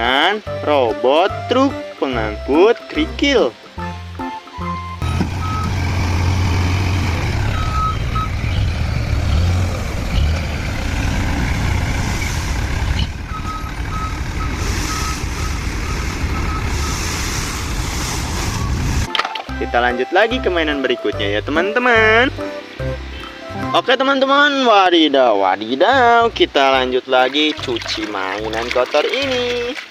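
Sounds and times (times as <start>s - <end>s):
truck engine rumbling: 1.3s - 29.6s
reversing alarm beeping: 4.6s - 6.0s, 7.2s - 8.7s, 13.0s - 19.0s
constant rushing noise: 7.0s - 19.1s.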